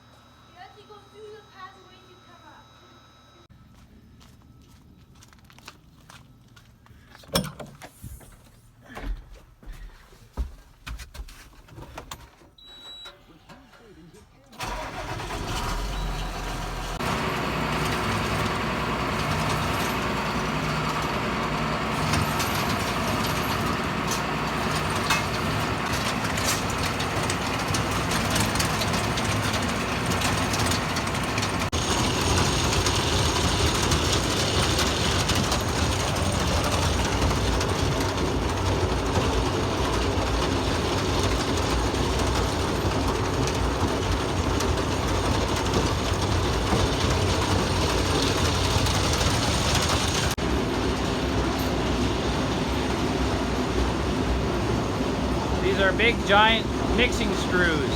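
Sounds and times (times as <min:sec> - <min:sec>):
feed mixer wagon clattering: 0:14.6 - 0:57.9
tractor engine running: 0:14.6 - 0:57.9.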